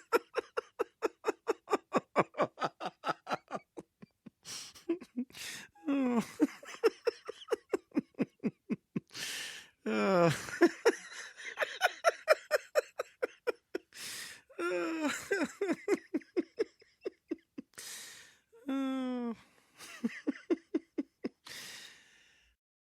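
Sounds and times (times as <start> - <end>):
man laughing uncontrollably: 0.0 - 9.2, 10.1 - 14.0, 14.6 - 17.7, 19.8 - 21.6
sharp gasping in-breaths: 9.1 - 9.8, 13.9 - 14.5, 17.8 - 18.5, 21.4 - 22.6.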